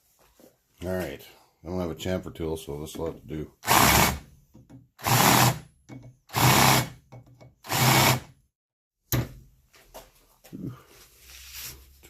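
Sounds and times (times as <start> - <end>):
drill press running: 3.6 - 4.2, 5.0 - 5.6, 6.3 - 7.0, 7.7 - 8.3.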